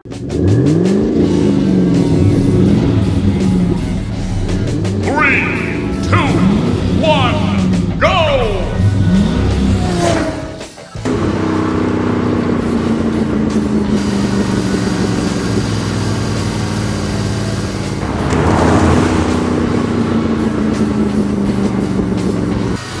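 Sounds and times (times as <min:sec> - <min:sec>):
background music: 0:00.6 - 0:10.8
vehicle engine running: 0:00.7 - 0:21.6
rushing noise: 0:17.8 - 0:20.4.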